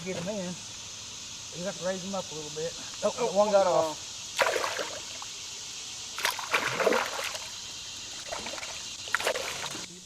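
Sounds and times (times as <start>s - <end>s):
steady hiss: 0.0s - 10.0s
water splashing: 4.3s - 5.3s, 6.1s - 10.0s.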